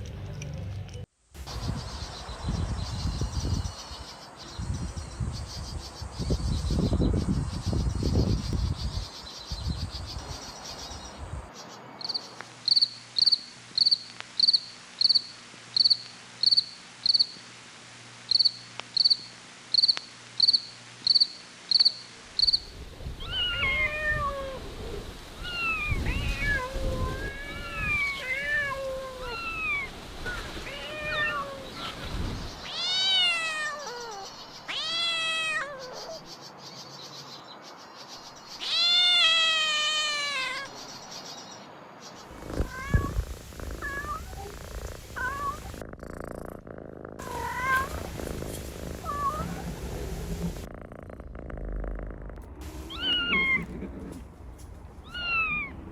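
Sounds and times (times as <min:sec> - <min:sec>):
cricket chirping: 0:12.0 - 0:17.4, 0:18.3 - 0:22.8
kittens mewing: 0:42.3 - 0:49.7, 0:50.5 - 0:54.3, 0:55.0 - 0:55.8.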